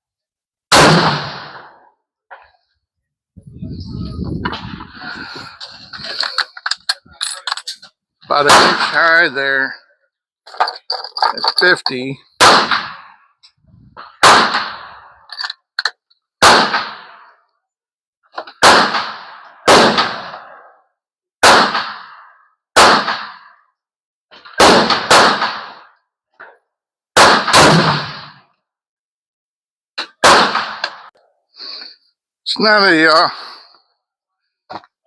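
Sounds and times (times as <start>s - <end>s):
rifle shots echoing: 0.7s - 1.8s, 8.4s - 9.4s, 11.6s - 13.1s, 14.1s - 15.3s, 16.4s - 17.3s, 18.6s - 20.6s, 21.4s - 22.2s, 22.8s - 23.5s, 24.6s - 25.9s, 27.2s - 28.4s, 30.2s - 31.1s.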